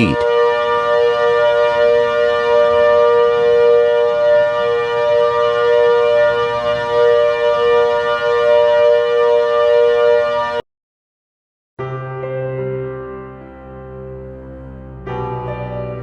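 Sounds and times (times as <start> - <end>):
steady siren alarm tone: 0.0 - 10.6.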